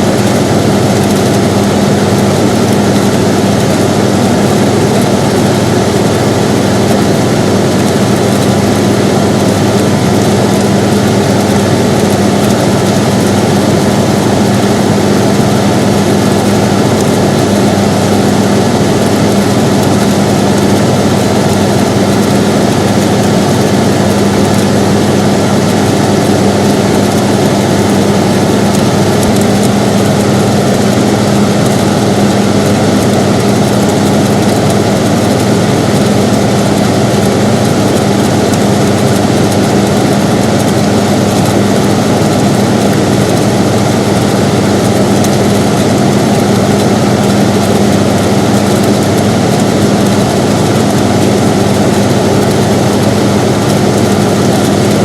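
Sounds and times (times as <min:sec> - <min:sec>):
air conditioner running: 0:00.0 - 0:55.0.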